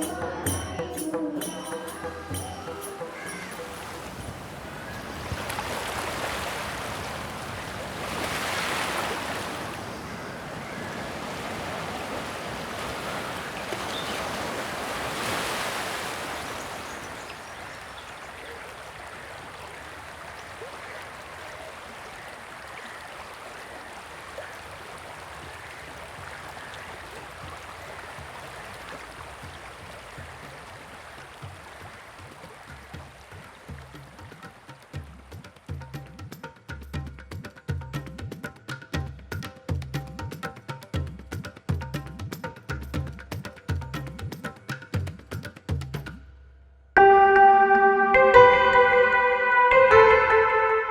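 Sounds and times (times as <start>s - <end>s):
sea waves washing ashore: 0.0s - 35.6s.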